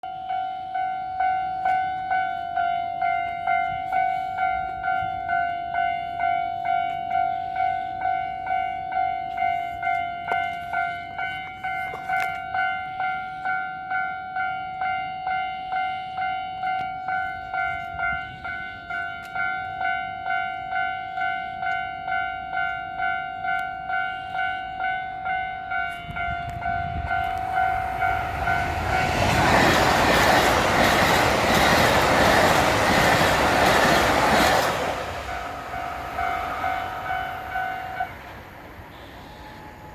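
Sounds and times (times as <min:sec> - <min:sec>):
level crossing warning bell ringing: 0:00.0 - 0:39.9
train rumble: 0:16.8 - 0:39.9.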